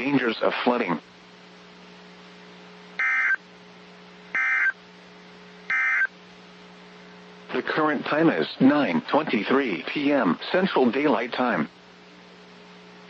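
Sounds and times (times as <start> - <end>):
low steady radio hum: 0.0 - 13.0
buzzy digital data bursts: 3.0 - 3.4, 4.4 - 4.8, 5.7 - 6.1.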